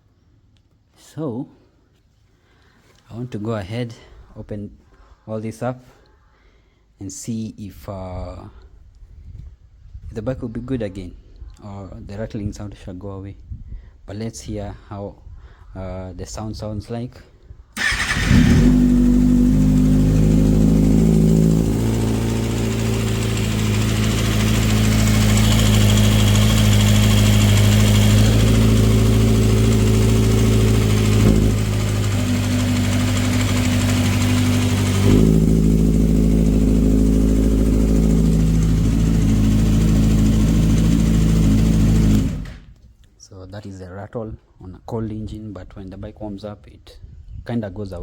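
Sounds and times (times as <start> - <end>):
motorcycle engine idling: 17.8 - 42.8.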